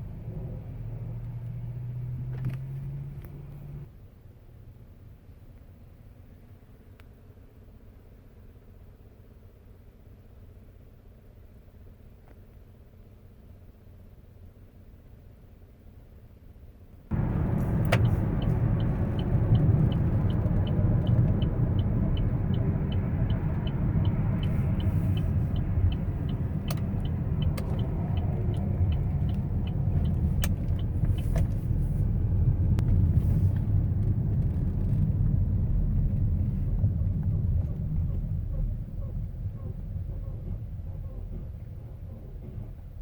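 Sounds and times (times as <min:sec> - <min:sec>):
car road rumble: 0:00.0 - 0:43.0
light high ticking: 0:17.2 - 0:31.3
sharp creaks or clicks: 0:33.9 - 0:35.4.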